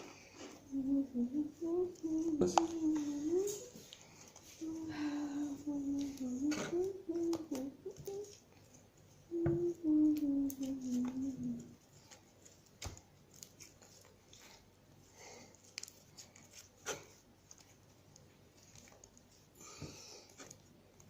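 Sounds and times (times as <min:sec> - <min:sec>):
person humming a sliding note: 0:00.7 - 0:03.7, 0:04.6 - 0:08.4, 0:09.3 - 0:11.7.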